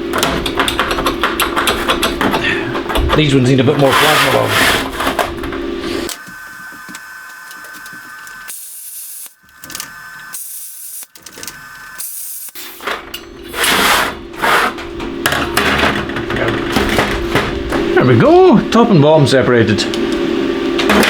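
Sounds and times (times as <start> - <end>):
plasma cutter hissing: 5.8 - 12.8
plasma cutter whine: 6.1 - 13.7.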